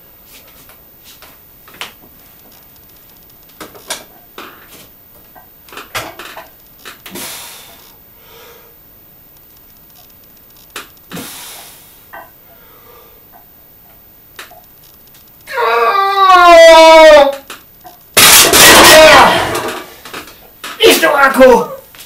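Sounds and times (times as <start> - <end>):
sharp clicks and knocks: 9.4 - 11.1.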